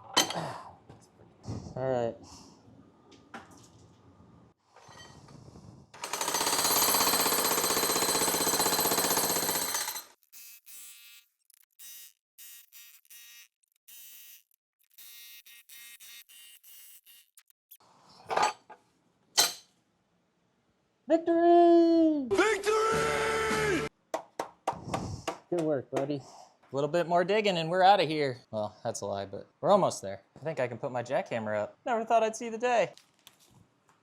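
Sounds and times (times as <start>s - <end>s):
jackhammer hammering concrete: 6.0s - 10.1s.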